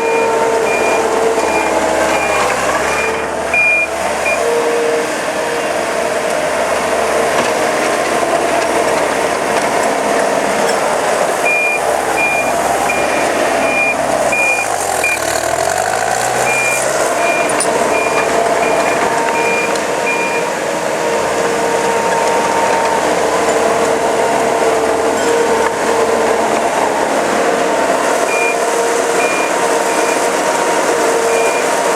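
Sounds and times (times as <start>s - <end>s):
backup alarm beeping: 0.0s - 4.5s, 11.4s - 15.2s, 16.4s - 25.6s, 28.2s - 30.3s, 31.2s - 31.7s
diesel engine running: 0.0s - 31.9s.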